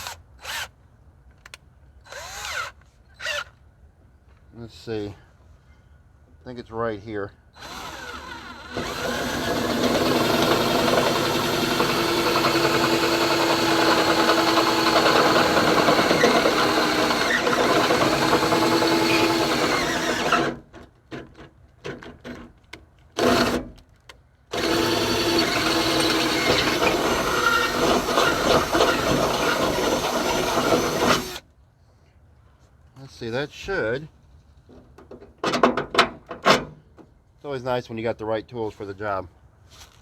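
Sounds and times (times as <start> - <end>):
electric drill running: 2.1 - 3.4, 7.6 - 20.6, 24.5 - 31.4.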